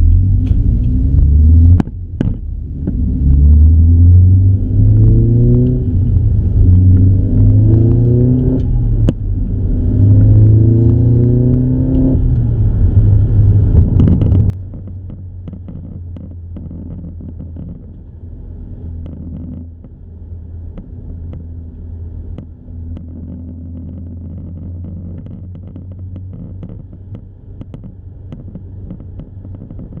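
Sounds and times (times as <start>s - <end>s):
engine and road drone: 0.0s - 30.0s
sharp clicks and ticks: 10.1s - 18.0s, 22.3s - 30.0s.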